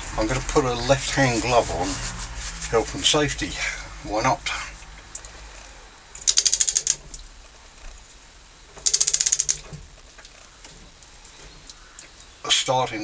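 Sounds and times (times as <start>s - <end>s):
ratchet wrench clicking: 6.2s - 7.0s, 8.8s - 9.6s.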